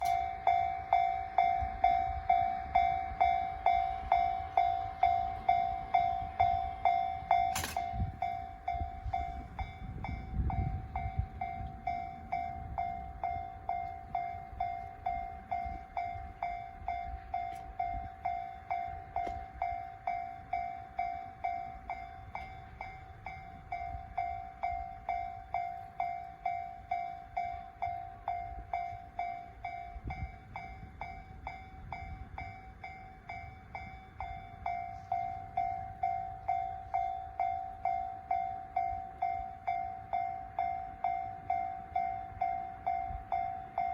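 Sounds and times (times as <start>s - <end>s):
level-crossing warning bell: 0.0s - 43.9s
sharp click: 7.5s - 7.9s.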